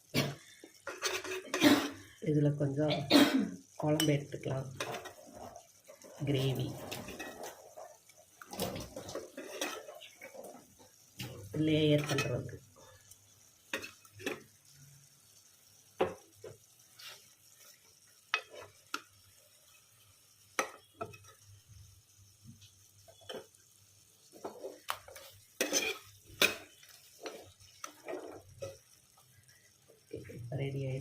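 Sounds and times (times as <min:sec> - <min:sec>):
metal spoon scraping a pot: 0:00.2 - 0:02.0, 0:04.0 - 0:10.7, 0:13.7 - 0:14.4, 0:24.3 - 0:28.8.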